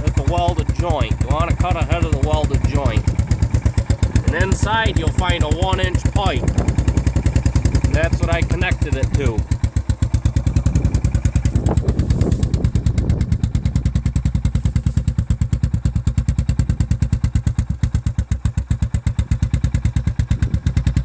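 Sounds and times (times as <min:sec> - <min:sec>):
atv engine idling: 0:00.0 - 0:21.0.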